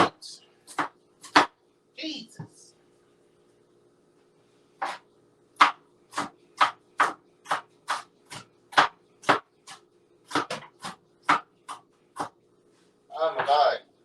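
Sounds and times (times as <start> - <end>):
knife chopping on cutting board: 0.0 - 1.6, 4.8 - 12.4.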